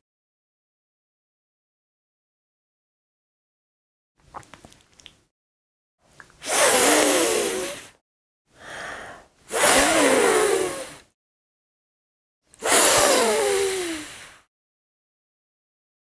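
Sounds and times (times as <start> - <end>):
woman making hissing f sounds: 6.4 - 8.0, 8.6 - 11.1, 12.6 - 14.5.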